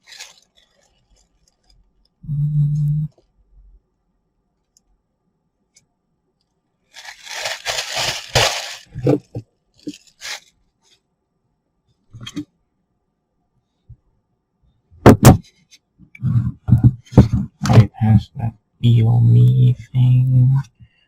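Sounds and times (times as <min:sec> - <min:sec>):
plastic packaging crinkling and tearing: 0:00.0 - 0:02.0, 0:06.9 - 0:10.6
low buzz: 0:02.2 - 0:03.2.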